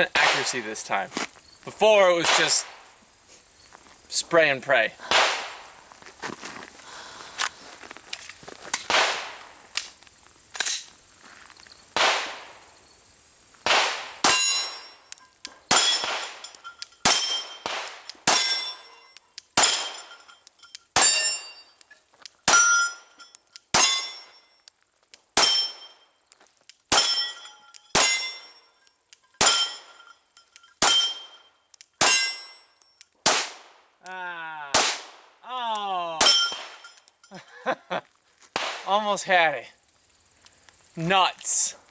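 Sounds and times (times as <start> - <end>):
pistol shots: 0.1 - 0.8, 2.2 - 2.9, 5.0 - 5.7, 8.8 - 9.5, 12.0 - 12.6, 13.6 - 15.0, 15.6 - 18.8, 19.6 - 20.2, 21.0 - 21.5, 22.4 - 23.0, 23.7 - 24.3, 25.4 - 25.9, 26.9 - 28.5, 29.4 - 30.0, 30.8 - 31.4, 32.0 - 32.5, 33.2 - 33.9, 34.7 - 35.4, 36.2 - 37.0, 38.6 - 38.9
bullet clanging on steel target: 14.2 - 24.8, 25.4 - 33.2, 36.2 - 37.4.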